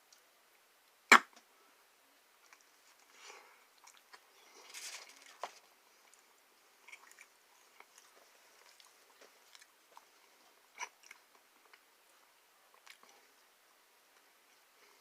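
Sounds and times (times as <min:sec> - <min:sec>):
person chewing food: 0:02.5 - 0:13.3.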